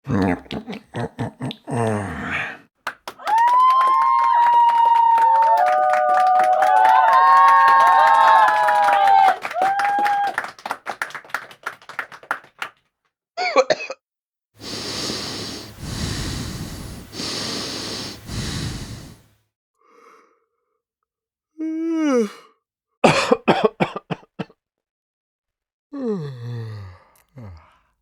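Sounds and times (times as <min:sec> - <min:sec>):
man groaning: 0:01.6 - 0:02.6
man breathing heavily: 0:14.6 - 0:20.4.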